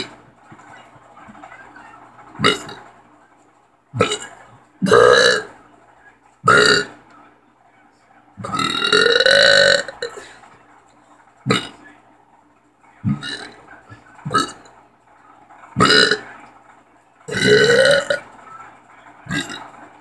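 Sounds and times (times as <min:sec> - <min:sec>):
person burping: 0:02.4 - 0:02.8, 0:04.0 - 0:05.5, 0:06.5 - 0:06.9, 0:08.4 - 0:10.2, 0:11.5 - 0:11.7, 0:13.0 - 0:13.5, 0:14.3 - 0:14.6, 0:15.8 - 0:16.2, 0:17.3 - 0:18.2, 0:19.3 - 0:19.6.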